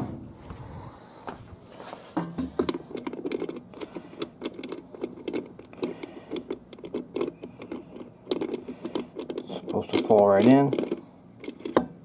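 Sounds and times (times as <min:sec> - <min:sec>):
metal parts clicking and rattling: 0:02.4 - 0:12.0.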